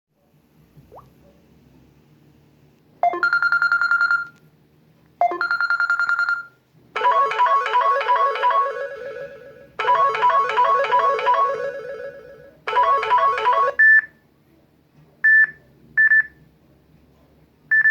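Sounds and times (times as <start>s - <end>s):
melodic ringtone: 3.0s - 4.2s, 5.2s - 13.8s
trilling electronic ringtone: 3.0s - 4.3s, 5.2s - 13.8s.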